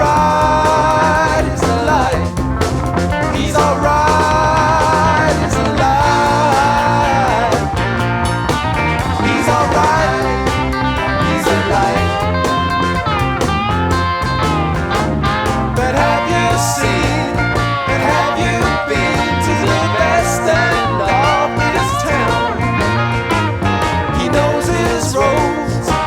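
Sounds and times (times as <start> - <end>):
bending lead guitar line: 0.0 - 26.0
rock band playing: 0.0 - 26.0.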